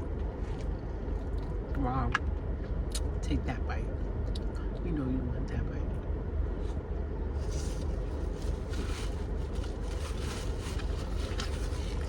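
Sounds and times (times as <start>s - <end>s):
low rumble: 0.0s - 12.0s
crunchy chewing: 7.4s - 12.0s.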